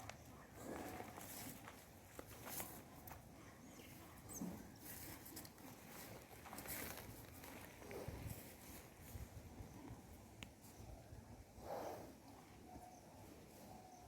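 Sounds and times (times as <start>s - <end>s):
bull breathing through nose: 11.6s - 12.2s.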